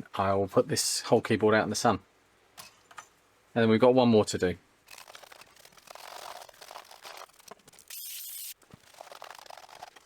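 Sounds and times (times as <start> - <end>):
keyboard rustling and crackling: 4.9 - 8.0, 8.6 - 10.0.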